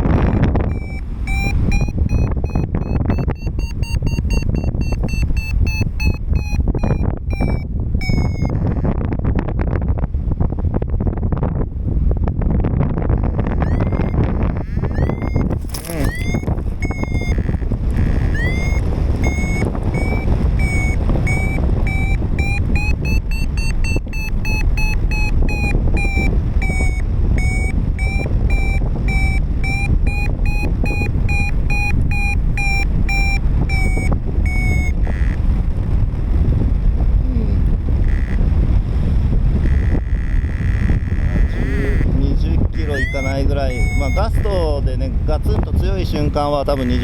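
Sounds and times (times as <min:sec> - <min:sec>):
variometer short beeps: 0:00.0 - 0:09.0, 0:13.4 - 0:35.4, 0:39.6 - 0:44.8, 0:46.6 - 0:47.0
wind rumble on microphone: 0:00.0 - 0:47.0.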